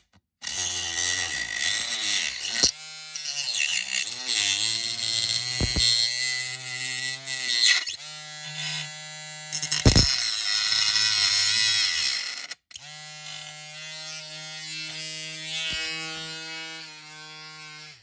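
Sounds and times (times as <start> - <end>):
rotary tool whining: 0.5 - 12.6.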